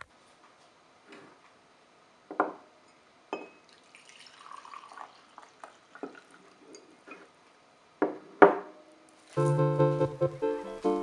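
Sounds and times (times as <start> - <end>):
liquid pouring: 3.6 - 6.6.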